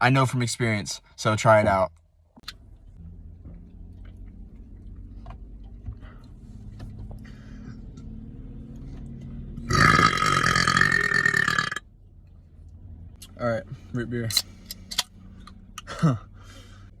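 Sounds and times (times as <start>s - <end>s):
man burping loudly: 9.7s - 11.8s.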